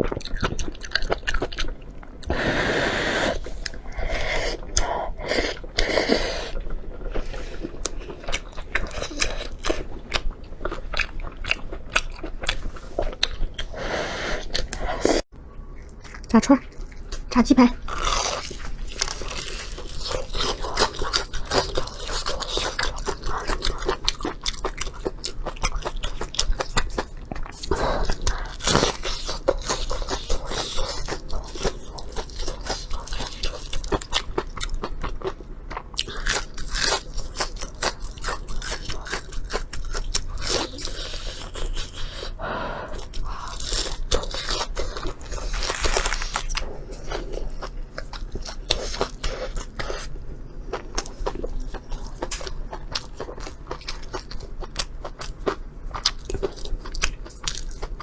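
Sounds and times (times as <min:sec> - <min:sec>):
crunching of crisp fried food: 0:00.0 - 0:02.3, 0:04.6 - 0:13.8, 0:14.4 - 0:58.0.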